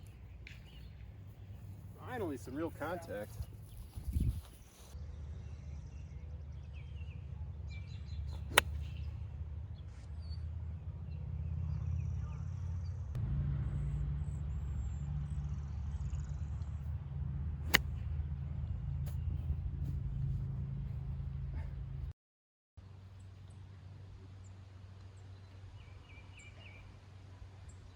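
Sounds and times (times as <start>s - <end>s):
faint birdsong: 0.0s - 3.9s, 5.0s - 20.3s, 22.8s - 27.9s
golf clubs striking balls: 8.4s - 9.0s
steady low rumble: 10.5s - 22.1s.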